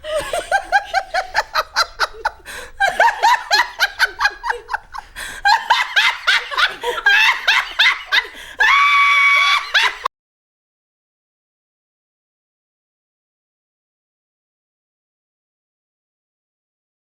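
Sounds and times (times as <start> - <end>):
person laughing hard: 0.0 - 10.1.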